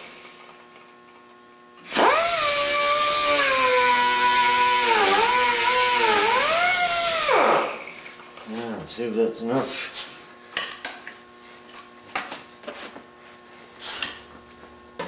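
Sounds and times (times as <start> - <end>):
angle grinder cutting metal: 1.9 - 8.0.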